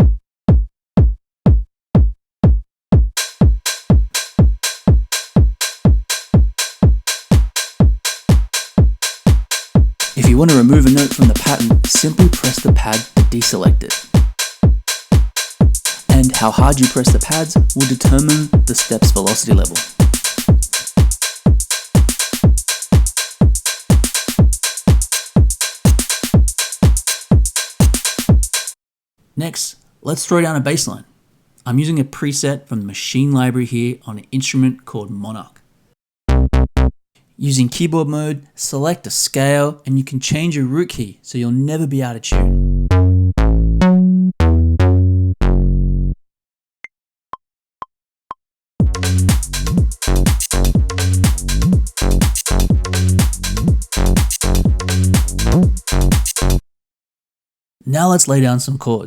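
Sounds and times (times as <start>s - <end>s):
kick drum thumps: 0.0s - 28.5s, 48.8s - 56.4s
hi-hats and percussion hits: 0.0s - 28.8s, 48.8s - 56.6s
synth bass notes: 10.1s - 14.0s, 16.1s - 17.3s, 36.3s - 36.9s, 42.4s - 46.2s, 48.8s - 56.6s.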